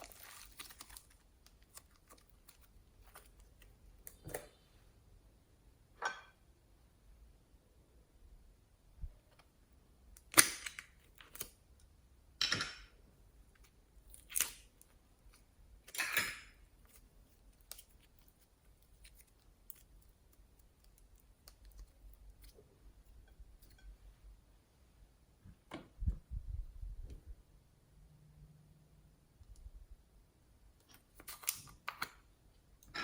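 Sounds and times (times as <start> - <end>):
slime popping and crackling: 0.0 - 3.4.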